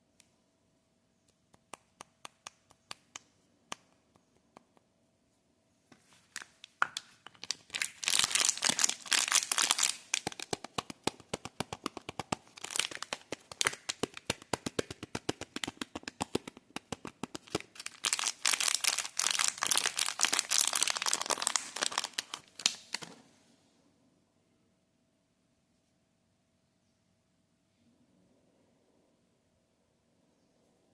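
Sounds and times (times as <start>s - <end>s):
wrapper crinkling and tearing: 6.2s - 15.8s, 17.1s - 23.0s.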